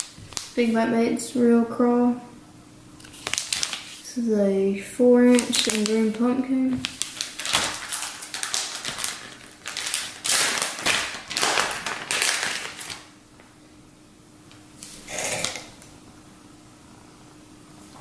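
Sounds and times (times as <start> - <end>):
plastic packaging crinkling: 0.0 - 0.8, 3.0 - 4.1, 5.2 - 13.1.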